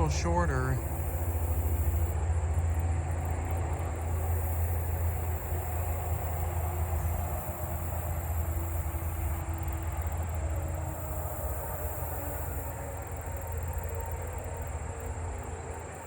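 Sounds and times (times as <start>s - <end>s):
vehicle engine rumble: 0.0s - 16.0s.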